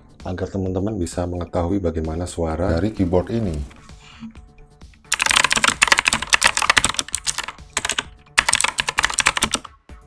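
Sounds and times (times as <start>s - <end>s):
clicky keyboard typing: 5.1s - 9.7s.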